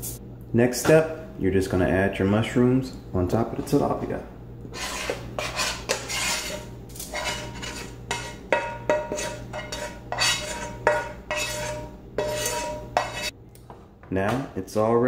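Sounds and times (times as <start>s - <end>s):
metal utensil scraping a pan: 4.7s - 13.4s.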